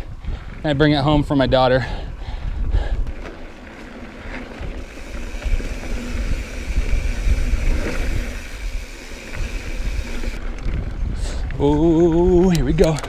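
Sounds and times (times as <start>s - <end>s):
wind buffeting microphone: 0.0s - 13.0s
steady high hiss: 4.8s - 10.4s.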